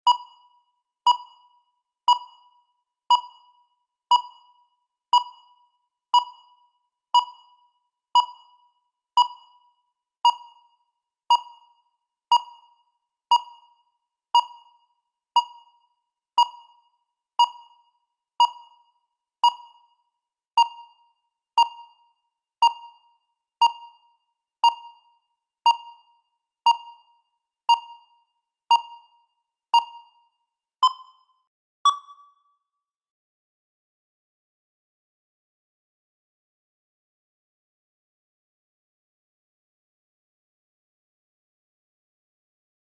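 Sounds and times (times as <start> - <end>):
countdown timer beeping: 0.0 - 4.6, 5.2 - 6.6, 7.2 - 8.6, 16.4 - 16.8, 17.4 - 20.0, 20.6 - 21.0, 21.6 - 22.0, 22.6 - 24.0, 24.6 - 25.1, 25.7 - 26.1, 26.7 - 30.2, 30.8 - 32.5.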